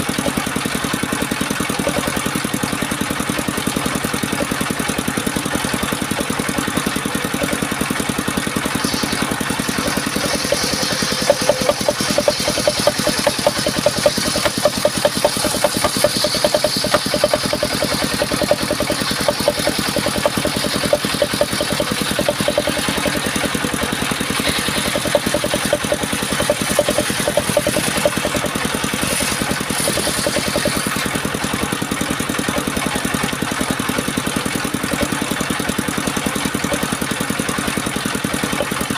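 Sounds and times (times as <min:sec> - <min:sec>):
engine-driven sawmill running: 0:00.0 - 0:38.9
saw cutting through wood: 0:00.0 - 0:38.9.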